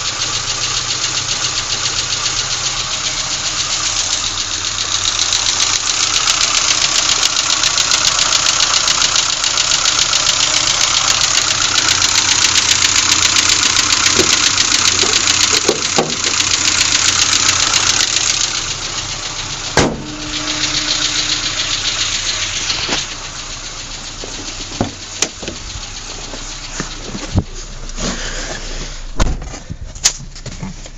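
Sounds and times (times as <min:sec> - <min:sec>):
car engine tappety ticking: 0:00.0 - 0:30.9
sharp knock: 0:19.8 - 0:20.2.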